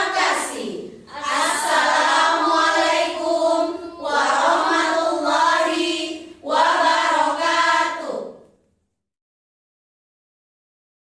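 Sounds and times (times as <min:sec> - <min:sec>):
children's choir singing: 0:00.0 - 0:08.4.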